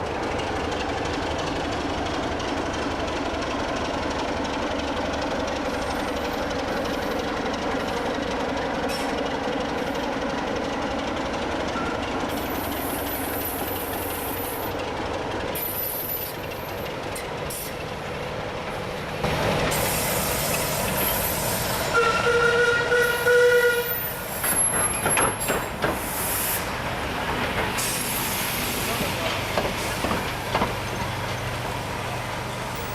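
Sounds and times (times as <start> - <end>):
train rumbling past: 0.0 - 32.9
train horn: 21.9 - 24.1.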